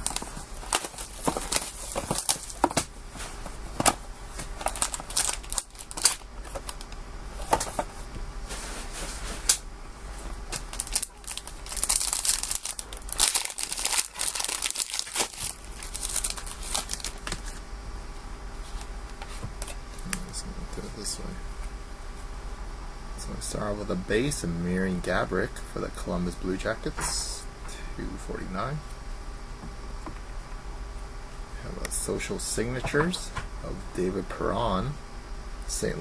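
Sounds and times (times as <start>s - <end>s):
wrapper crinkling and tearing: 0.0s - 2.9s, 4.5s - 6.9s, 10.5s - 17.6s.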